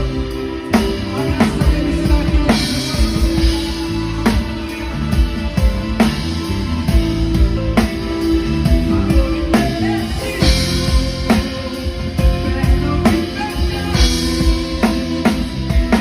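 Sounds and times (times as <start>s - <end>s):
bass: 0.0s - 16.0s
drum kit: 0.0s - 16.0s
guitar: 0.0s - 16.0s.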